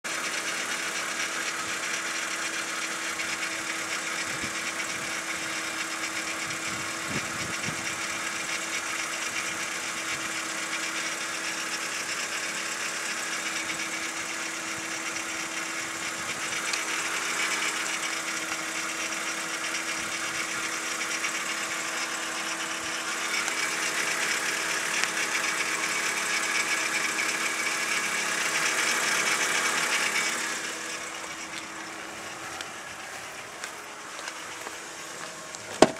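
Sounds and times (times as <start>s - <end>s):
car engine running: 0.0s - 35.9s
steady rattle: 0.1s - 35.9s.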